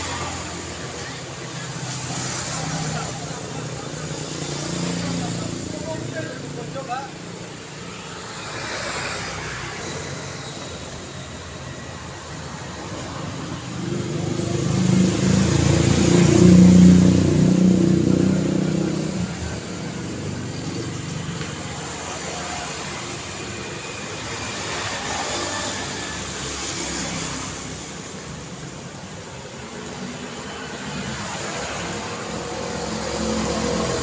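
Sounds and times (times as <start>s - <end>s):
cars and tyre noise: 0.0s - 34.0s
vehicle engine passing: 11.6s - 29.2s, 29.8s - 34.0s.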